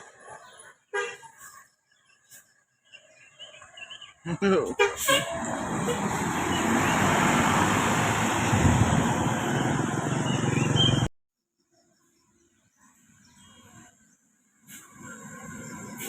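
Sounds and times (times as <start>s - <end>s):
vehicle passing close by: 5.2s - 11.1s.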